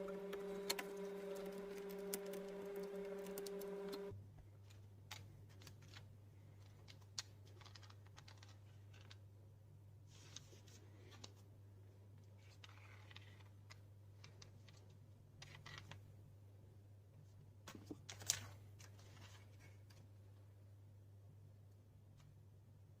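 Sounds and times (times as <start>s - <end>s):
steady low hum: 0.0s - 4.2s
faint clicks and rustles: 0.6s - 9.3s.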